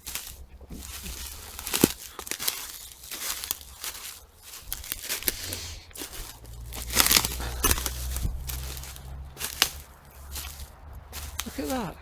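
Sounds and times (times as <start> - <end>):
footsteps through dry undergrowth: 0.0 - 12.0
low microphone rumble: 0.0 - 12.0.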